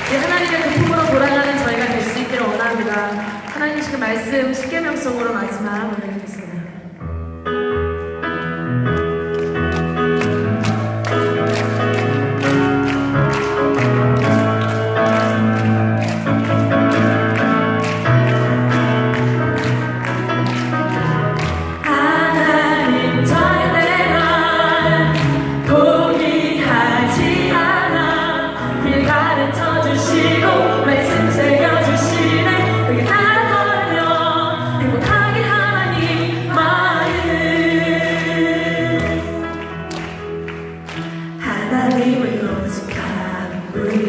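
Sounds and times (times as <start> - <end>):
instrumental accompaniment: 6.9 - 44.0
choir singing a hymn: 21.8 - 39.7.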